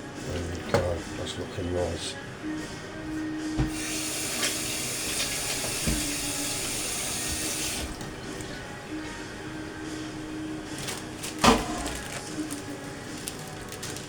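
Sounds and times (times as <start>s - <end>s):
kitchen tap running into sink: 3.6s - 8.5s.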